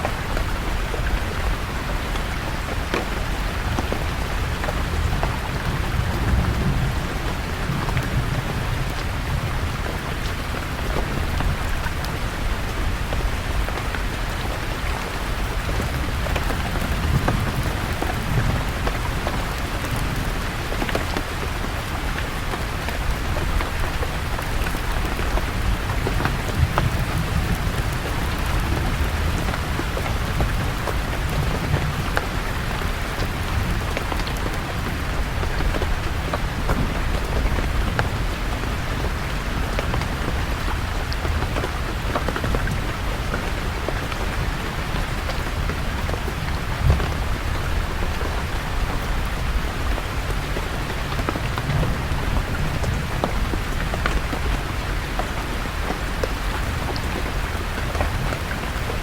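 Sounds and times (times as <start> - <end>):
rain falling on leaves: 0.0 - 59.0.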